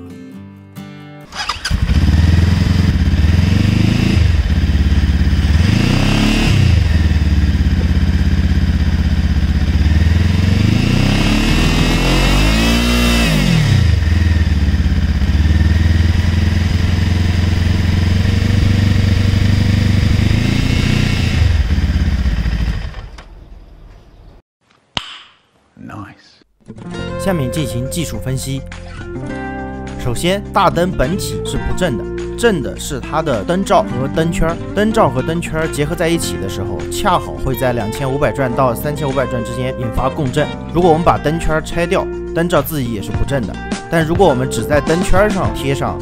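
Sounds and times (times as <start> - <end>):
motorcycle engine idling and revving: 1.3 - 24.4.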